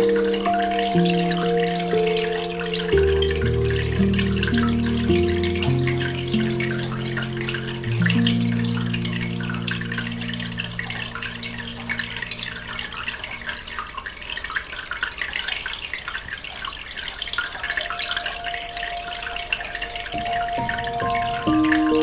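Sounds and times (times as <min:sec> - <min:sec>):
soft held music notes: 0:00.0 - 0:14.0, 0:17.3 - 0:22.0
aquarium water bubbling: 0:00.0 - 0:22.0.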